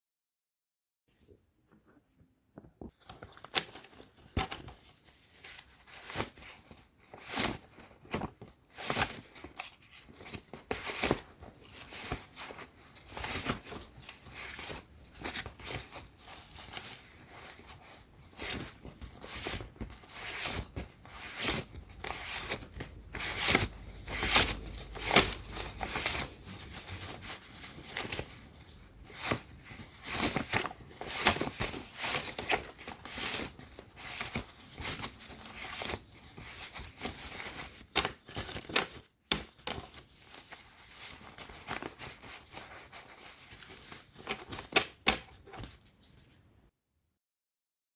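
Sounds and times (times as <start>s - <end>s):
banknotes flicked and rustled: 18.4s - 36.0s.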